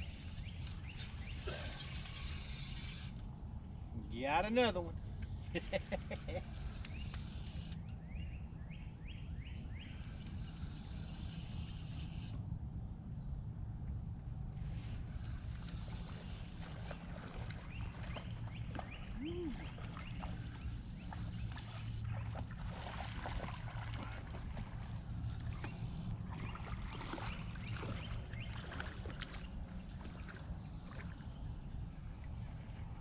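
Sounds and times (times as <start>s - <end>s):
water splashing and sloshing: 0.0s - 3.6s, 14.6s - 33.0s
steady low rumble: 0.0s - 33.0s.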